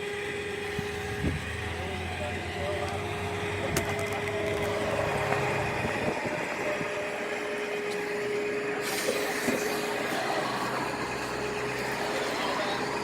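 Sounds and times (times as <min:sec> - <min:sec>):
constant tone: 0:00.0 - 0:13.0
vehicle engine running: 0:00.0 - 0:13.0.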